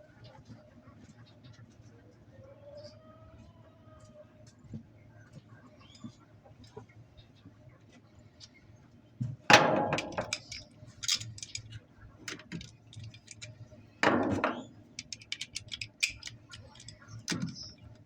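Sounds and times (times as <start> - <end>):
loud clunks: 9.5 - 10.6
metal tools clinking and rattling: 9.5 - 18.0.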